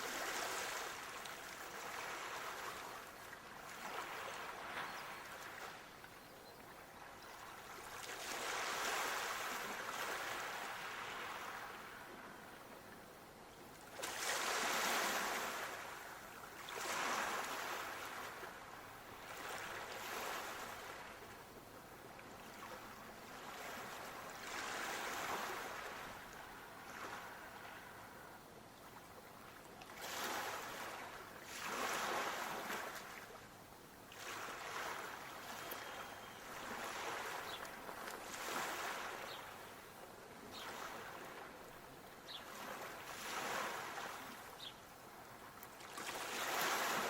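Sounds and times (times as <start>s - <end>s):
waves washing in: 0.0s - 5.9s, 7.6s - 12.2s, 13.9s - 21.4s, 22.4s - 28.3s, 29.9s - 33.4s, 34.1s - 39.6s, 42.5s - 44.6s, 45.8s - 47.0s.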